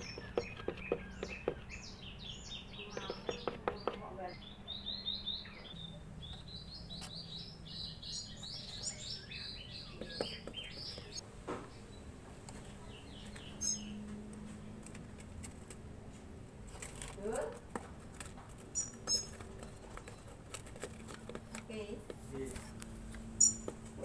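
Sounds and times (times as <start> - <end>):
young birds chirping: 0.0 - 24.0.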